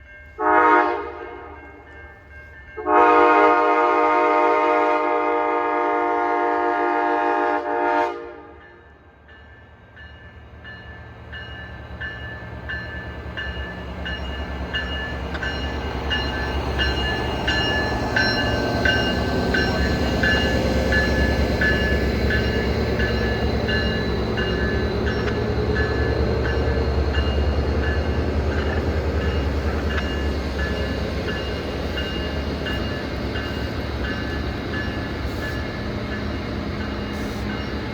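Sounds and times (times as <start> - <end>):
train horn blast: 0.4 - 1.6, 2.8 - 8.7
train rumble passing: 8.4 - 37.9.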